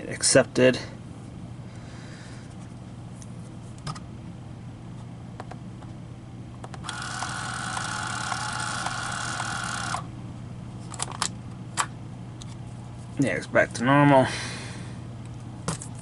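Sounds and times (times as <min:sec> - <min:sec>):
label maker motor whining: 0:06.8 - 0:10.1.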